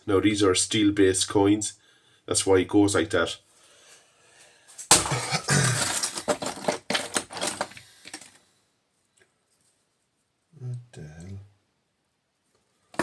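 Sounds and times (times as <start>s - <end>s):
scrap metal clattering: 4.9s - 8.2s.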